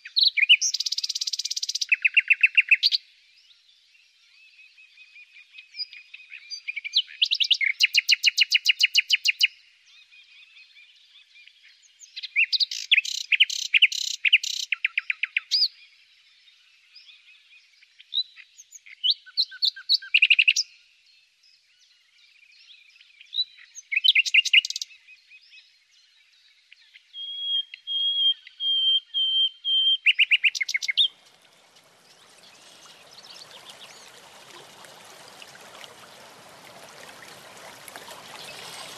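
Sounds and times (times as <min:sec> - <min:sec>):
songbird chirping: 0:00.0 - 0:38.9
running water: 0:30.8 - 0:38.9.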